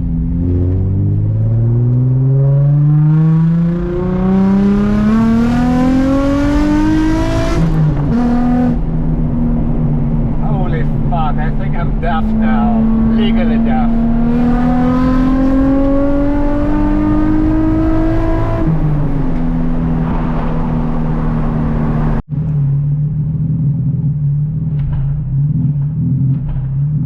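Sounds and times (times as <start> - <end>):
car engine revving hard: 0.3 - 22.2.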